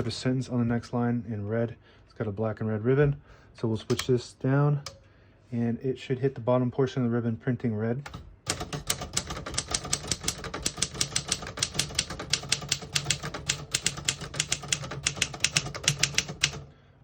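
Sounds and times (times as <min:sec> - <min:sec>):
manual typewriter typing: 0:08.1 - 0:16.7.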